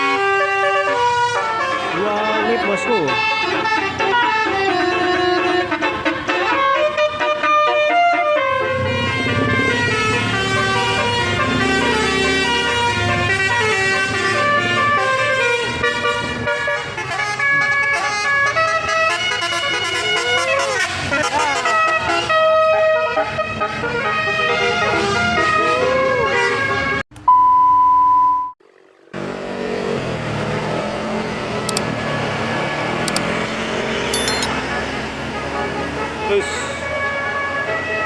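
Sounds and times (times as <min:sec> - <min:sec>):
multi-tone musical bus horn: 0:00.0 - 0:27.0, 0:32.0 - 0:38.0
engine rumble: 0:28.6 - 0:36.3.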